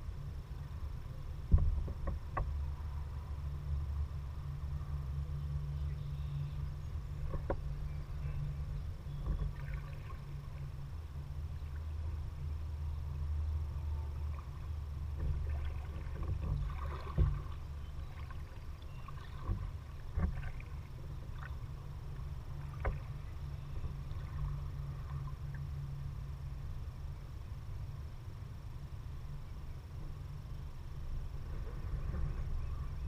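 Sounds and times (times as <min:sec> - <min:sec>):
low rumble: 0:00.0 - 0:33.0
water sounds: 0:05.9 - 0:27.0
kayak paddle strokes: 0:14.1 - 0:25.7.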